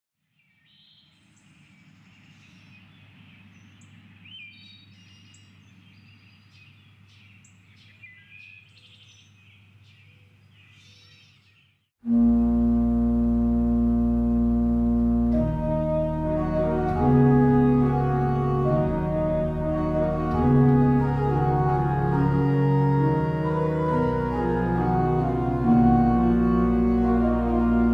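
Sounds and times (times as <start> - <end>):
church organ playing: 12.1 - 27.9
low steady hum: 12.1 - 27.9.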